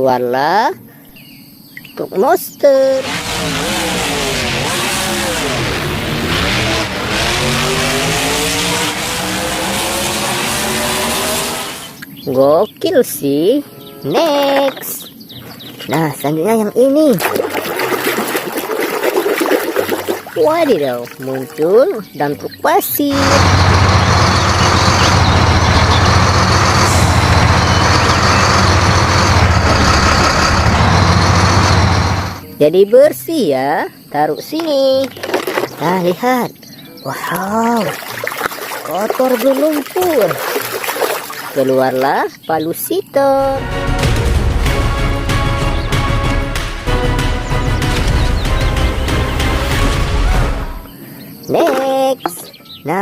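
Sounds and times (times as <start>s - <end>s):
monster truck engine revving: 2.8s - 12.0s, 23.1s - 32.4s
pressure washer motor hum: 3.0s - 12.0s, 23.1s - 32.4s.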